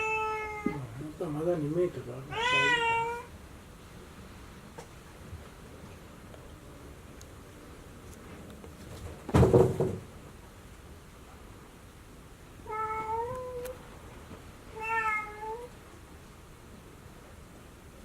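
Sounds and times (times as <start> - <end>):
cat meowing: 0.0 - 0.9, 2.3 - 3.3, 12.6 - 13.8, 14.7 - 15.8.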